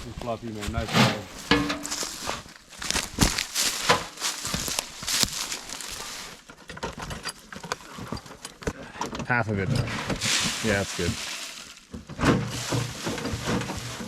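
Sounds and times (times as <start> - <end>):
wood chips rustling: 0.0 - 6.5, 10.1 - 14.0.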